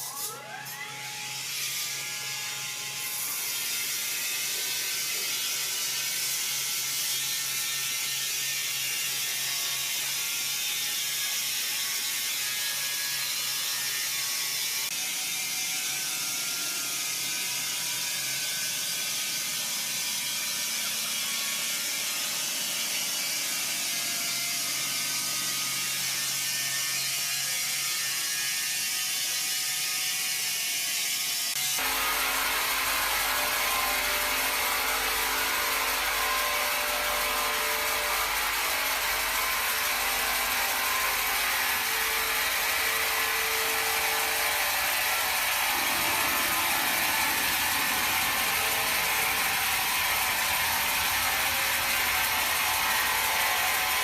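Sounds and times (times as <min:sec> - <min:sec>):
machinery fast mechanical rattle: 0:39.8 - 0:54.0.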